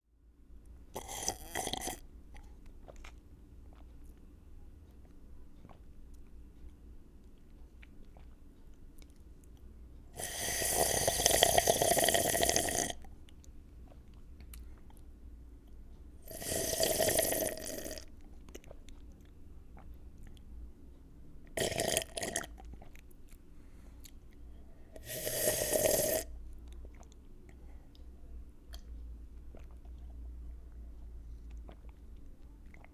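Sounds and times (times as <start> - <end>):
person slurping a drink: 1.0 - 2.0, 10.2 - 13.0, 16.3 - 18.0, 21.6 - 22.5, 25.0 - 26.3.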